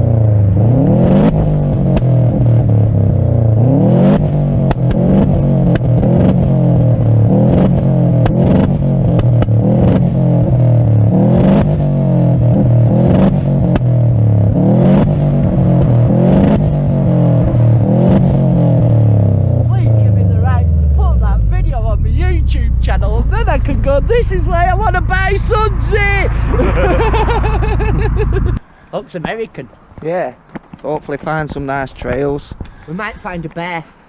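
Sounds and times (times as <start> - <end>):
car engine revving: 0.0 - 28.6
exhaust pops and bangs: 1.2 - 2.7, 4.1 - 21.3.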